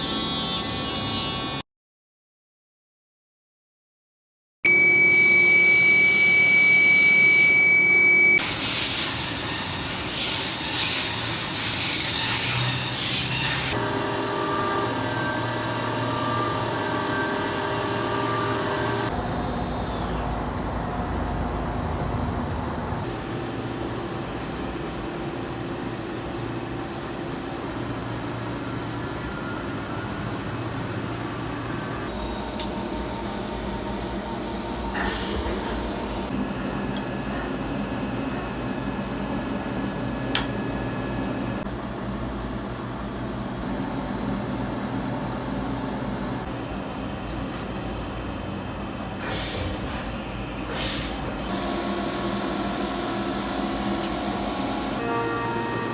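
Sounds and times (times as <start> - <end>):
machinery hum and whine: 4.7 - 55.9
loud hiss: 8.4 - 13.7.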